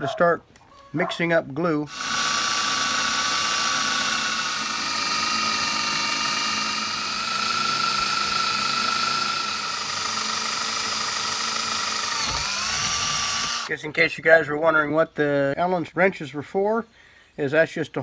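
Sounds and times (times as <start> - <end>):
electric drill whining: 1.9 - 13.7.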